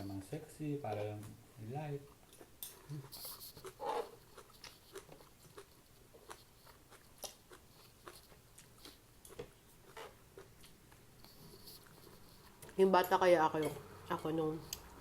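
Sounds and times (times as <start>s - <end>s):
chewing and biting food: 2.1s - 12.9s.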